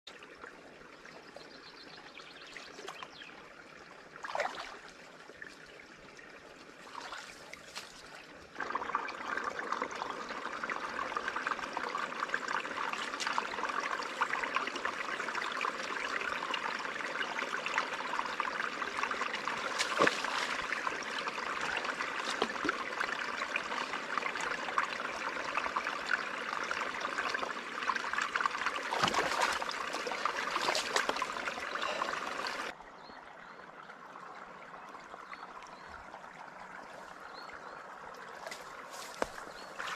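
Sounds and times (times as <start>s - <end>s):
river water rushing: 28.5s - 32.7s.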